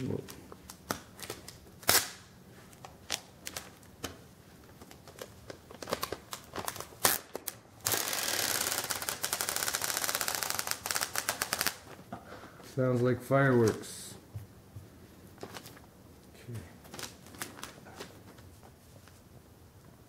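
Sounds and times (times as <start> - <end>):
packaging snapping and crackling: 0.2 - 12.0, 16.8 - 18.4.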